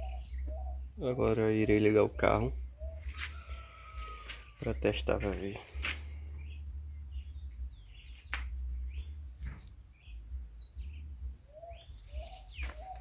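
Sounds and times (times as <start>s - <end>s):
birds chirping: 0.0s - 13.0s
low rumble: 2.5s - 12.2s.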